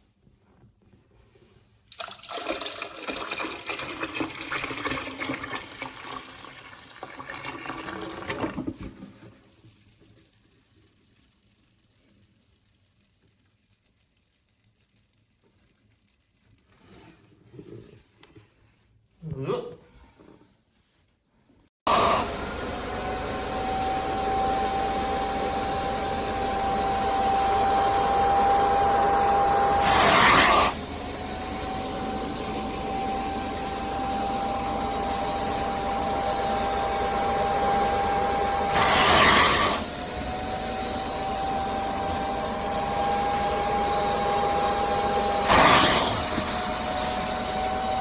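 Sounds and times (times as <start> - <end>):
suction motor whining: 21.9 - 48.0.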